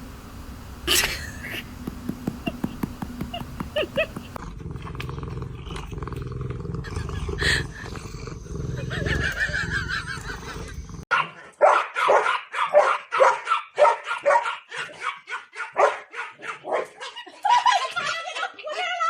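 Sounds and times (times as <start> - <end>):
dog barking rapidly: 11.1 - 17.2.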